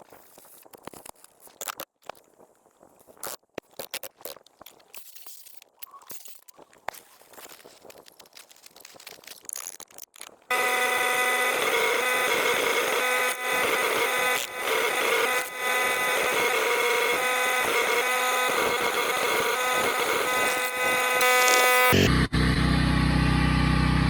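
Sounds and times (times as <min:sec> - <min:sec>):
mechanical whine: 0:10.5 - 0:24.0.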